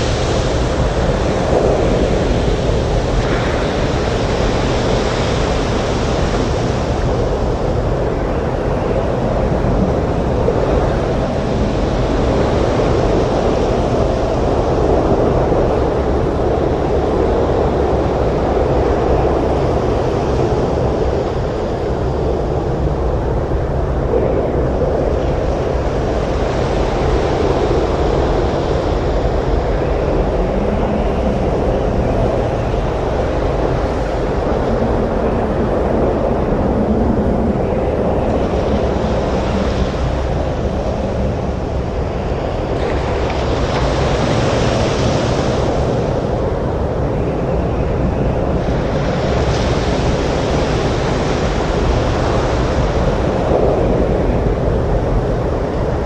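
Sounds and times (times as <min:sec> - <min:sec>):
wind: 0:00.0 - 0:56.0.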